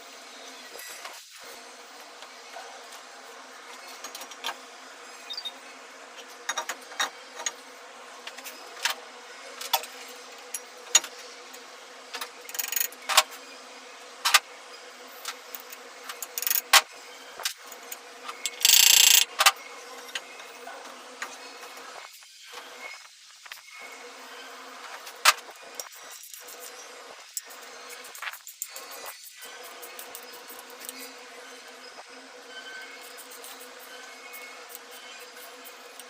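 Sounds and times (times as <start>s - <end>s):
tools clicking and knocking on metal: 18.5s - 19.2s.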